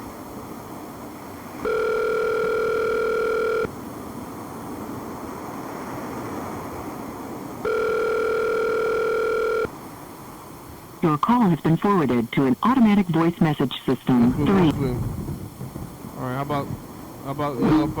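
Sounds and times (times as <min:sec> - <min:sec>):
telephone ringback tone: 0:01.6 - 0:03.7, 0:07.6 - 0:09.7
phone line hiss: 0:01.6 - 0:03.8, 0:07.6 - 0:09.8, 0:17.4 - 0:18.0.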